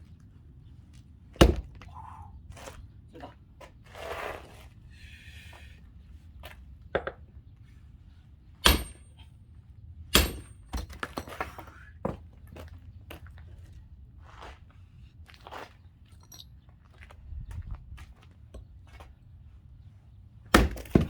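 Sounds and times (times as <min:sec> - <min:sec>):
axe splitting firewood: 0:01.4 - 0:02.7, 0:08.6 - 0:09.1, 0:10.1 - 0:12.2, 0:20.5 - 0:21.0.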